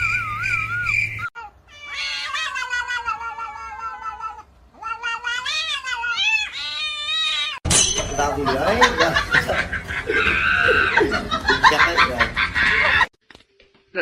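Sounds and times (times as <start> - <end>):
high chirping trill: 0.0 - 1.3
warbling whistle: 0.0 - 1.3
cat yowling: 1.4 - 7.6.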